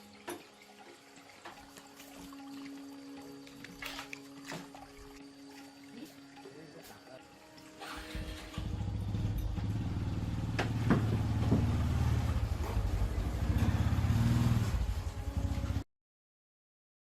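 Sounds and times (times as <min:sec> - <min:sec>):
small engine running: 0:07.7 - 0:15.8.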